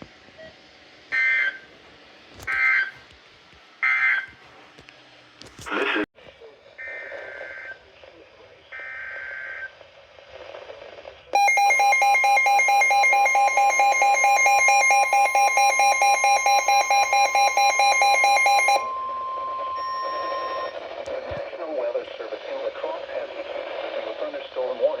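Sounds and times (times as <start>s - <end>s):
steady alert tone: 11.4s - 20.9s
warbling data-header tones: 11.4s - 20.9s.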